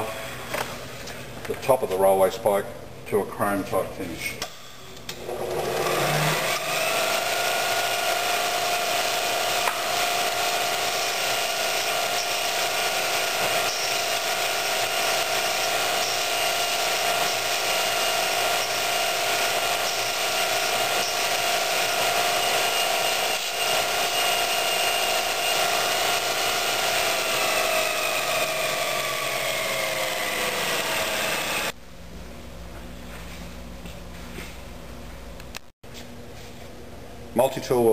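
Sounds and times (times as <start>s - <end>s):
belt grinder whining: 5.1s - 31.8s.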